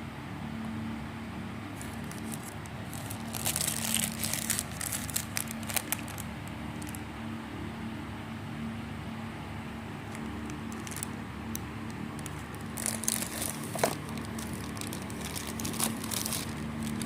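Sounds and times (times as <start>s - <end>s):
steady low hum: 0.0s - 17.0s
packaging crinkling: 1.8s - 7.0s, 10.1s - 17.0s.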